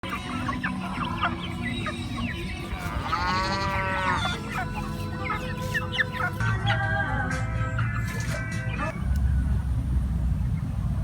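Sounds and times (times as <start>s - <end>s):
chickens clucking: 0.0s - 7.0s, 7.9s - 9.2s
rooster crowing: 2.8s - 4.5s.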